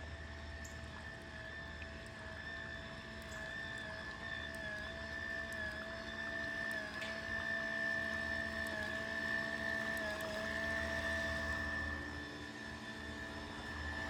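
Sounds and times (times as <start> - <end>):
small electric motor whining: 0.0 - 14.0.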